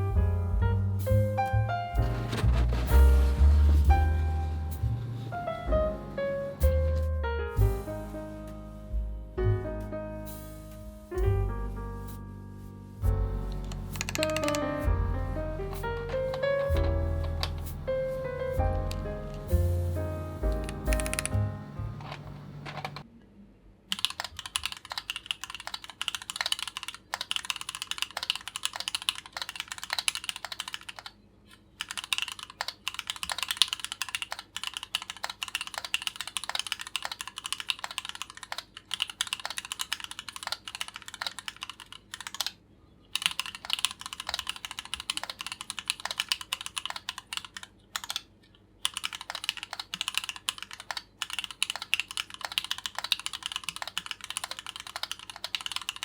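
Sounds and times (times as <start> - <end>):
mechanical keyboard typing: 13.4 - 23.1, 23.9 - 56.0.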